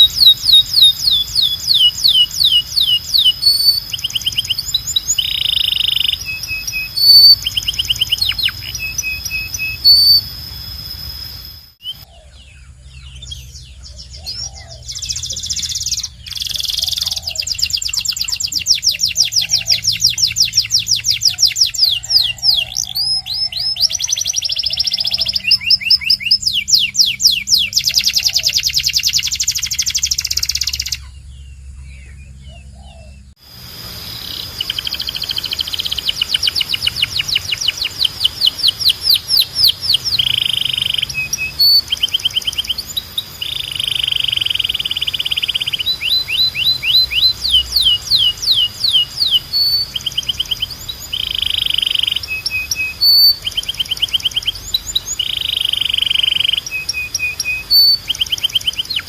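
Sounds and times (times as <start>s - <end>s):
steady low hum: 0.0s - 15.3s, 31.0s - 51.1s
canary singing rapid trills: 0.0s - 59.0s.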